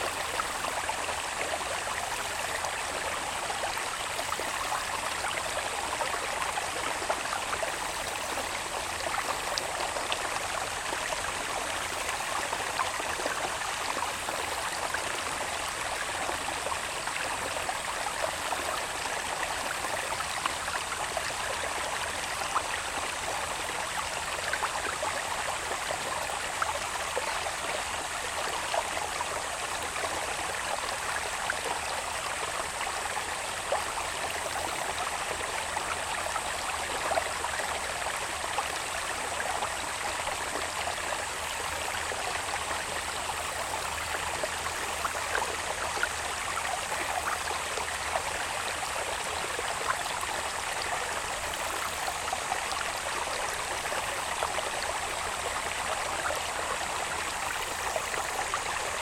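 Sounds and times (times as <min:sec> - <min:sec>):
stream babbling: 0:00.0 - 0:59.0.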